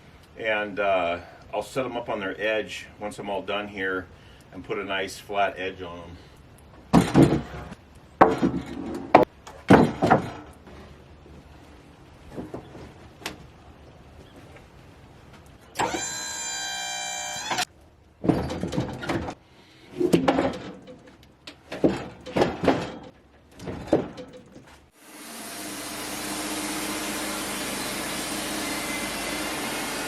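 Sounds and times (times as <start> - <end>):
boards knocking and clattering: 6.9 - 10.6, 18.2 - 19.4, 20.0 - 24.8
motor whine: 15.8 - 17.7.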